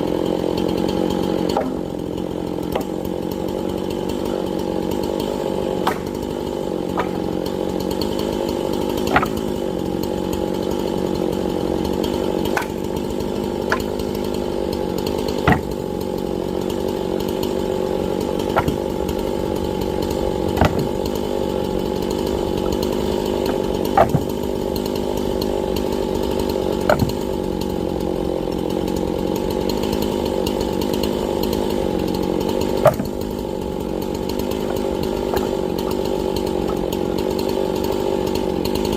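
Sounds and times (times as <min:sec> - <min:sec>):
chainsaw cutting wood: 0:00.0 - 0:38.9
sharp knocks: 0:05.8 - 0:06.2, 0:06.9 - 0:07.2, 0:08.9 - 0:09.6, 0:15.2 - 0:15.8, 0:18.4 - 0:19.1, 0:19.7 - 0:21.3, 0:22.0 - 0:24.5, 0:26.8 - 0:27.3, 0:32.8 - 0:33.4.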